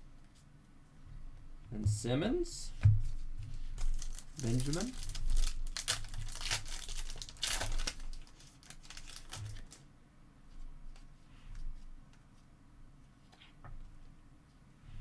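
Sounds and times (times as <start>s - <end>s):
plastic wrapper crinkling: 3.7s - 9.9s.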